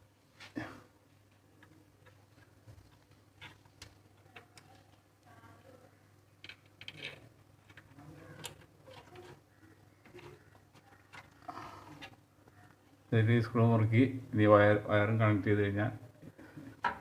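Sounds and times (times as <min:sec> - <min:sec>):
plastic parts clicking and tapping: 0:01.6 - 0:05.0, 0:06.4 - 0:12.2, 0:16.8 - 0:17.0.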